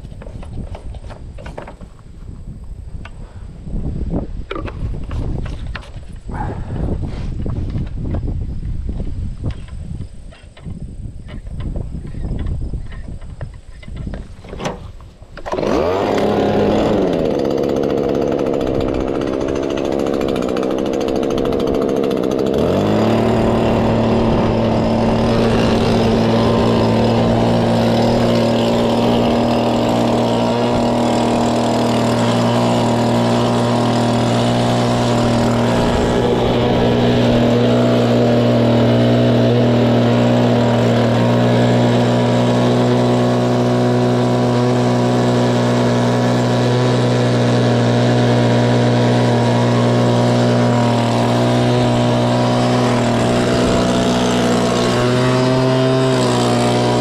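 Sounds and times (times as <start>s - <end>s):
farm machine engine running: 15.4s - 57.0s.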